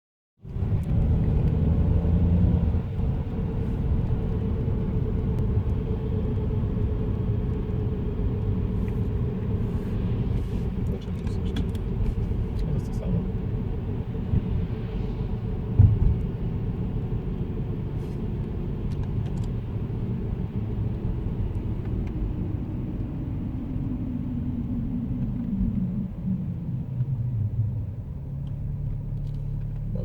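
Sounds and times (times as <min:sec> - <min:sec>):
car road rumble: 0:00.4 - 0:30.0
short thump: 0:15.8 - 0:16.3.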